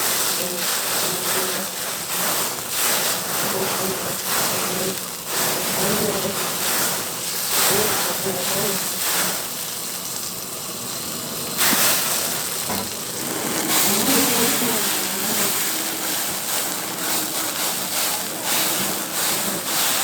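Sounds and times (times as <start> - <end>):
lobster hissing on a grill: 0.0 - 20.0
faint voices: 12.6 - 16.2.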